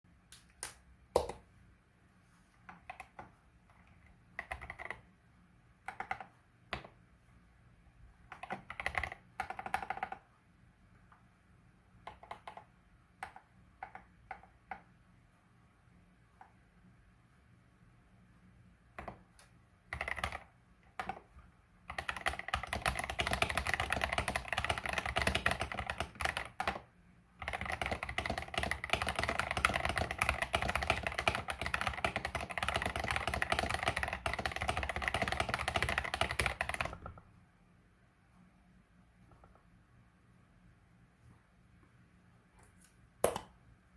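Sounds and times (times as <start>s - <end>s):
mechanical keyboard typing: 2.7s - 5.1s, 5.8s - 7.0s, 8.2s - 10.3s, 12.0s - 14.9s, 19.0s - 21.3s, 21.9s - 37.2s.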